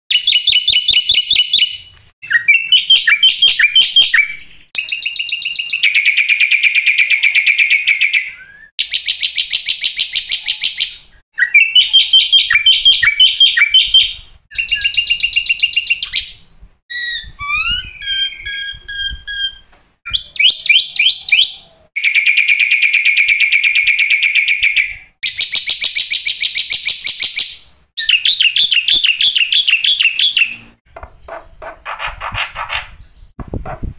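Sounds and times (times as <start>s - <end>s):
bird whistled notes and glides: 0.1s - 6.7s, 7.9s - 27.4s.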